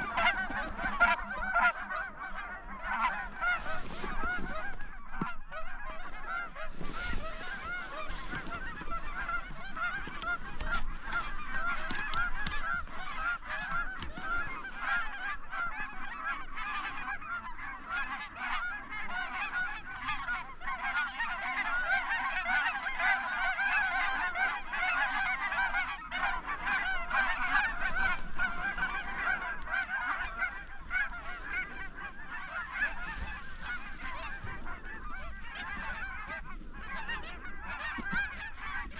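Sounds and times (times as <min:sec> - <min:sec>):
flock of geese honking: 0:00.0 - 0:38.9.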